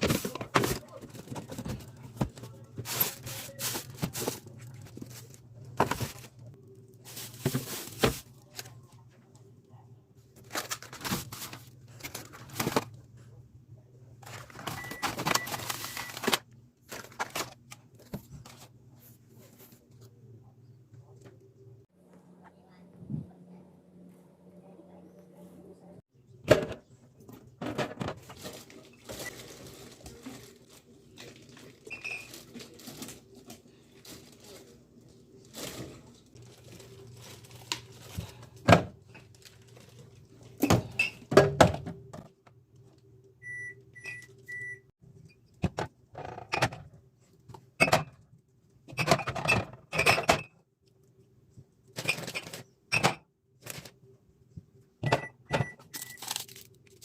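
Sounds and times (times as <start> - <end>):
plastic containers knocking and rustling: 0.0 - 8.7, 10.4 - 13.1, 14.2 - 18.7, 26.4 - 30.6, 40.6 - 42.6, 45.6 - 46.9
refrigerator hum: 0.0 - 57.0.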